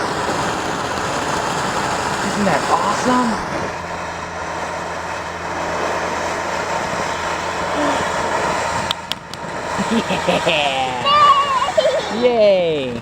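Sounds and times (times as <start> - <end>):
firework fountain hissing: 0.0 - 13.0
low steady hum: 0.0 - 13.0.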